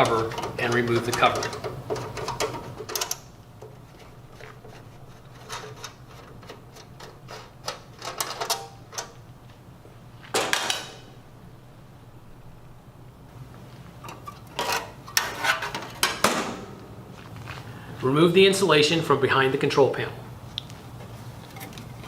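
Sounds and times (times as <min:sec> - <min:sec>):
screwdriver clicking on sheet metal: 0:00.0 - 0:03.7
metal scrape: 0:03.8 - 0:07.6, 0:14.2 - 0:16.0.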